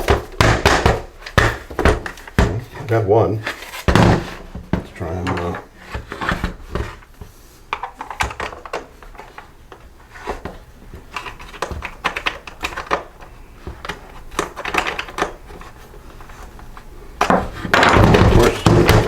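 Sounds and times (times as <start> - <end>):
plastic housing clicking and clattering: 7.7 - 19.0.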